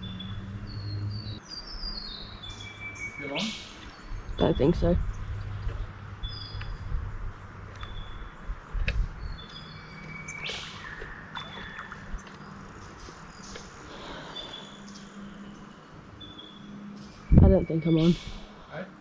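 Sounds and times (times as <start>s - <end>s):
outdoor background hiss: 0.0s - 19.0s
high bird chirps: 9.2s - 18.7s.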